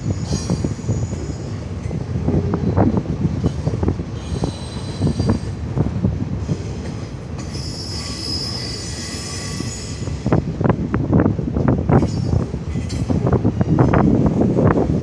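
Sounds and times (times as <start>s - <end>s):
freight train rumbling: 0.0s - 15.0s
high-pitched wheel squeal: 7.5s - 10.1s.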